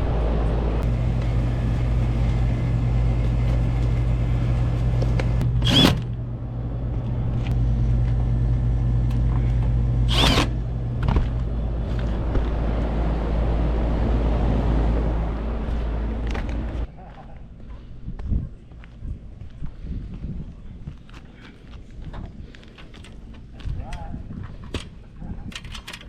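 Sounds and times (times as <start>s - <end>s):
fan noise: 0.0s - 16.9s
hvac unit hum: 0.0s - 16.9s.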